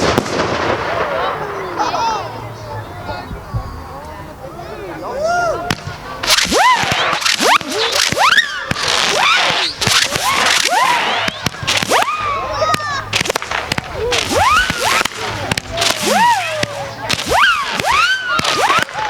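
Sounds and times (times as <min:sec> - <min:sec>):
firework cracks: 0:00.0 - 0:02.0, 0:05.7 - 0:19.0
firework whistles: 0:05.7 - 0:19.0.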